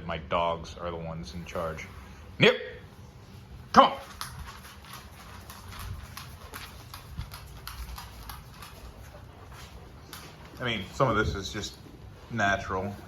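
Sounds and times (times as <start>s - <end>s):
dog claws clicking on hard floor: 3.8s - 11.2s.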